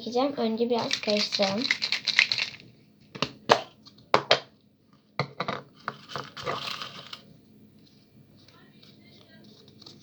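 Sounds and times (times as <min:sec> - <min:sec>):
papers knocking in container: 0:00.8 - 0:02.6
paper rustle: 0:06.0 - 0:07.2, 0:07.8 - 0:10.0.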